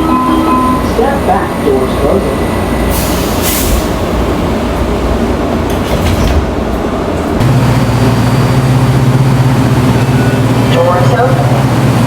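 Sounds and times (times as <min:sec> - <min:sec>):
railcar rumble: 0:00.0 - 0:12.0
train doors sliding shut: 0:02.9 - 0:07.4.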